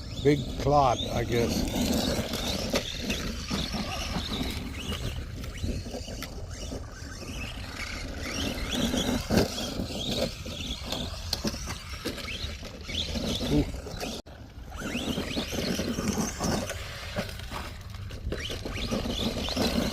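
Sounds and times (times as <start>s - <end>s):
tires scrabbling on loose ground: 0.0s - 19.9s.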